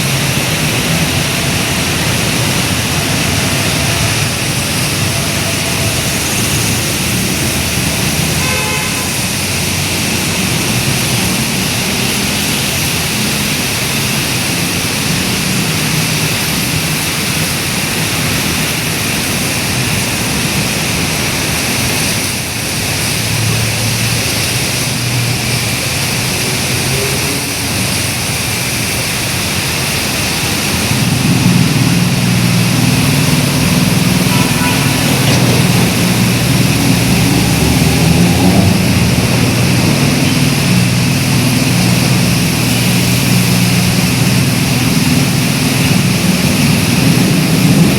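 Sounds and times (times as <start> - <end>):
car horn: 0.0 - 9.8, 30.7 - 44.4
heavy rain: 0.0 - 47.9
vehicle engines passing: 0.0 - 47.9.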